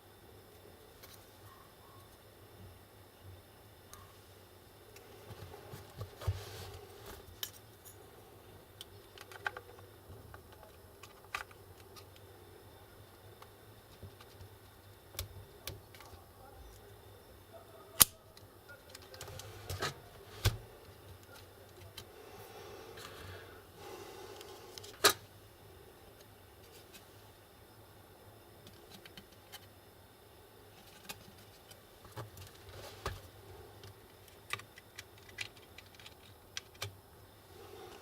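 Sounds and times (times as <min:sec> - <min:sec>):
faint steady hum: 0:00.0 - 0:38.0
tools and laptop parts clicking: 0:33.8 - 0:37.0.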